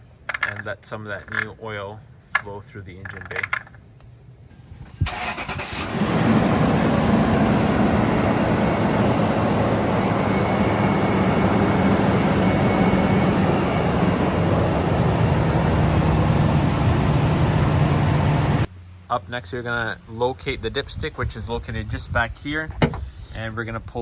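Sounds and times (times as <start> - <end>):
car engine starting and idling: 4.9 - 18.7.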